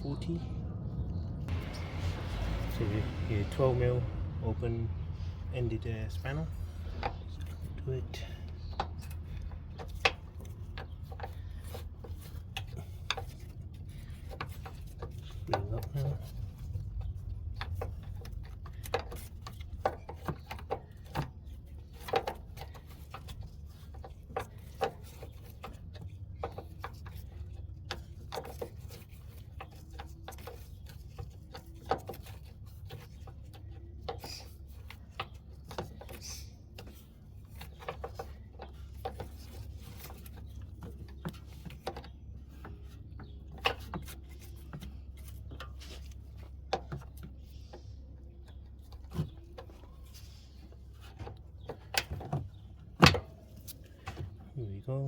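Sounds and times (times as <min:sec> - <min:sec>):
steady low hum: 0:00.0 - 0:29.6.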